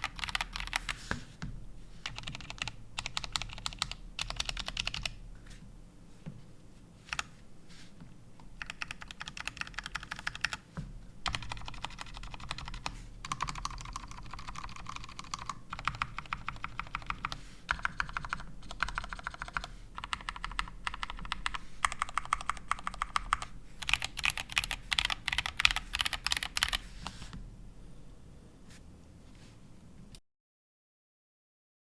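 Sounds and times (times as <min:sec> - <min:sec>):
mechanical keyboard typing: 0:00.0 - 0:00.9, 0:02.0 - 0:05.2, 0:08.6 - 0:10.6, 0:11.2 - 0:26.8.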